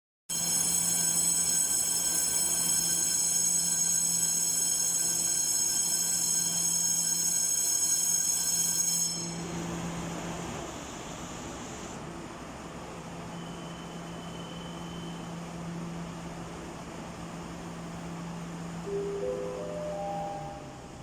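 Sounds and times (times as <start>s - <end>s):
platform departure bell ringing: 0.3s - 9.8s, 18.6s - 21.0s.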